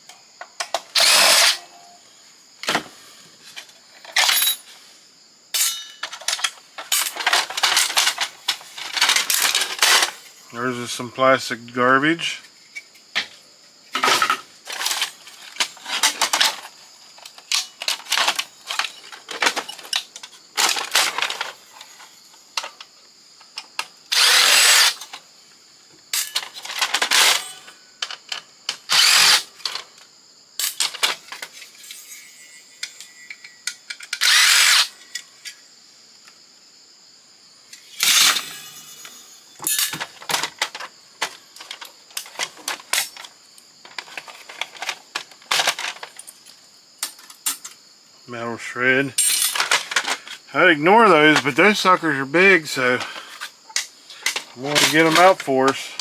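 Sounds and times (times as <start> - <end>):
power drill running in bursts: 1.0 - 1.5, 24.1 - 25.0, 28.9 - 29.4, 34.2 - 34.9.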